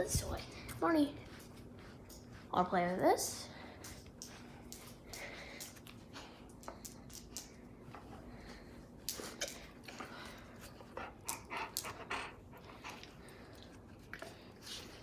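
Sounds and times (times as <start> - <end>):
dog playing with toy clicks: 6.5 - 7.6.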